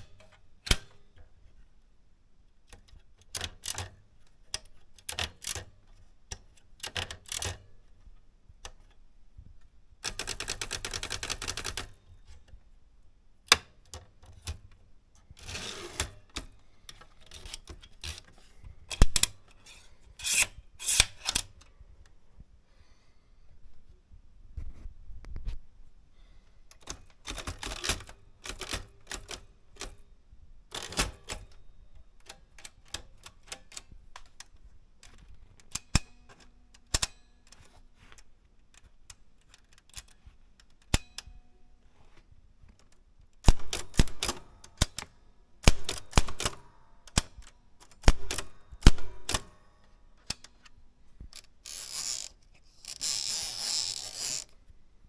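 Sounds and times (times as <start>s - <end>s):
typewriter mechanism rasping: 10.0s - 11.9s, 15.4s - 16.5s, 17.2s - 21.5s, 26.8s - 29.9s, 30.7s - 31.4s, 43.5s - 49.5s, 51.4s - 54.5s
typewriter keys clacking: 10.1s - 11.9s, 26.8s - 29.9s, 43.5s - 45.1s, 45.7s - 49.5s.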